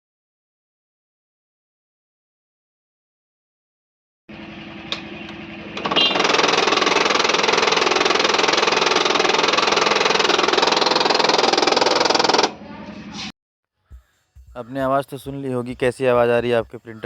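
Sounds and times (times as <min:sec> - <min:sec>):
printer grinding rattle: 0:05.8 - 0:12.6.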